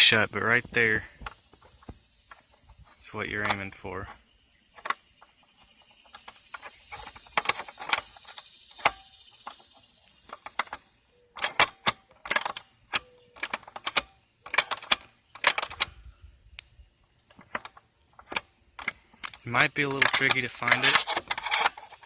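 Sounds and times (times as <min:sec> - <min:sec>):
screwdriver scraping and clicking on metal: 0:02.3 - 0:04.1, 0:06.0 - 0:09.6, 0:11.4 - 0:15.9, 0:17.3 - 0:22.0.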